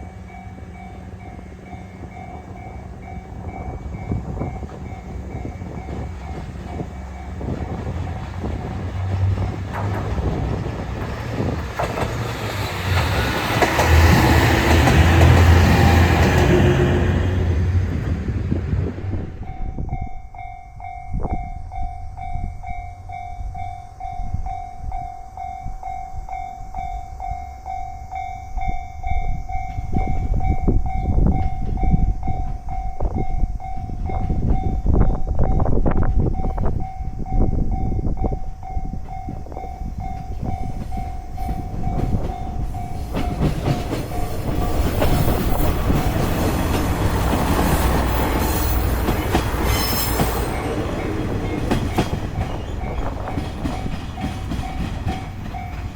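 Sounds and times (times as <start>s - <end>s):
level-crossing warning bell ringing: 0.0s - 9.6s, 19.4s - 55.9s
train wheel clatter: 0.0s - 19.6s, 38.2s - 55.9s.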